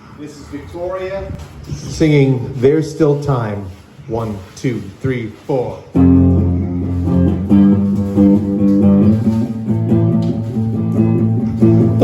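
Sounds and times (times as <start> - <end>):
guitar playing: 5.9 - 12.0
low bass line: 6.0 - 12.0.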